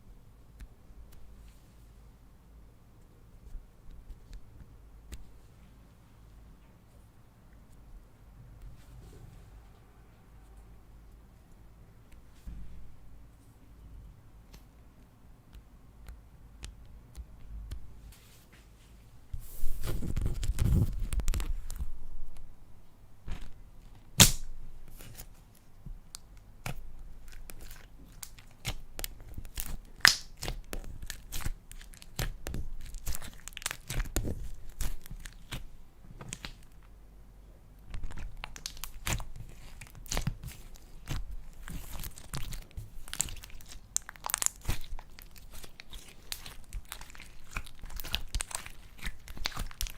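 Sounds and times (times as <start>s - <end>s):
slime squishing and crackling: 24.2s - 36.8s, 37.8s - 49.9s.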